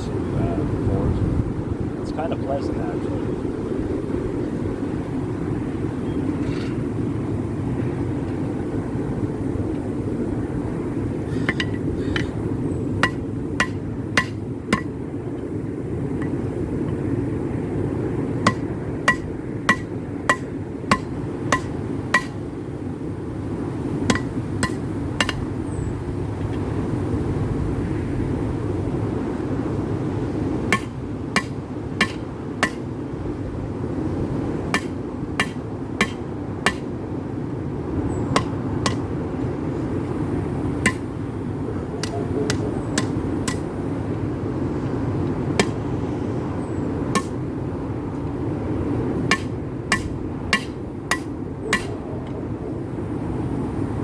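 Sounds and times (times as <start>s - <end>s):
low rushing noise: 0.0s - 54.0s
hammer striking steel on anvil: 11.4s - 12.3s, 13.0s - 15.0s, 18.4s - 22.5s, 24.1s - 25.5s, 30.7s - 32.9s, 34.8s - 36.9s, 38.4s - 39.1s, 40.8s - 41.1s, 42.0s - 43.8s, 45.6s - 45.8s, 47.1s - 47.4s, 49.3s - 52.0s.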